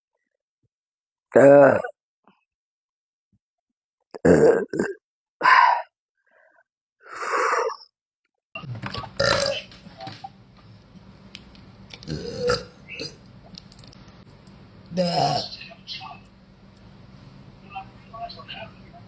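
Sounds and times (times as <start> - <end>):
person burping loudly: 1.3 - 2.0, 4.1 - 5.0, 9.2 - 9.7, 12.0 - 13.2, 14.9 - 15.5
steady background hum: 8.6 - 19.0.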